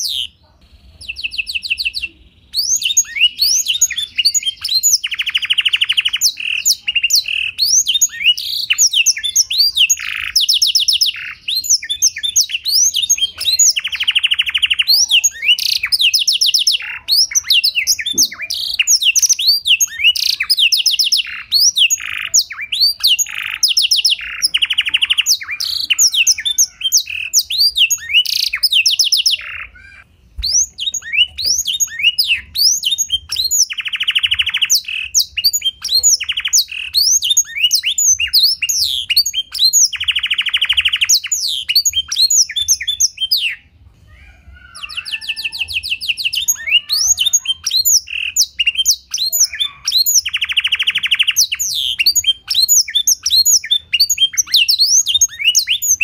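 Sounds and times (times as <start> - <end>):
canary singing: 0.0 - 56.0.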